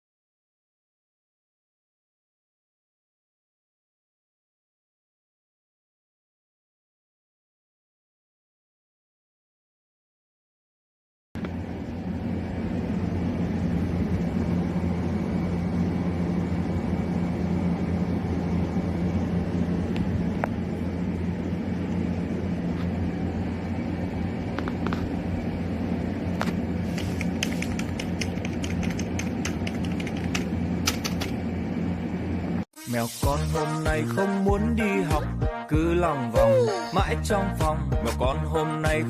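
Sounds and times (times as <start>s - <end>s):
steady low hum: 11.4s - 32.7s
keyboard typing clicks: 27.0s - 31.3s.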